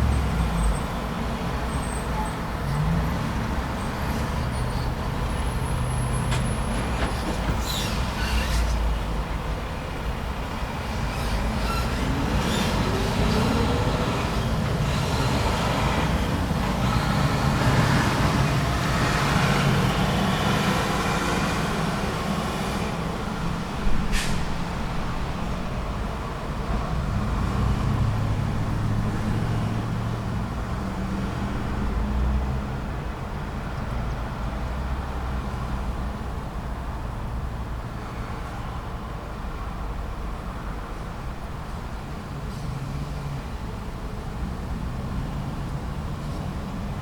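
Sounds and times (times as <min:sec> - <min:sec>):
road traffic: 0:00.0 - 0:47.0
loud vehicle passing: 0:10.9 - 0:32.8.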